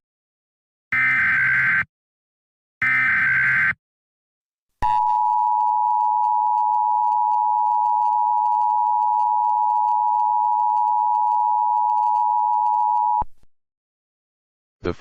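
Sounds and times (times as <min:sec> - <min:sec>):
loud steady two-tone beep: 0:04.8 - 0:13.2.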